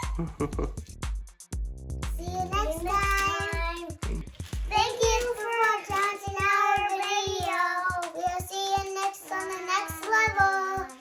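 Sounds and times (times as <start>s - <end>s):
music with steady beat: 0.0s - 11.0s
child singing long notes: 8.7s - 11.0s.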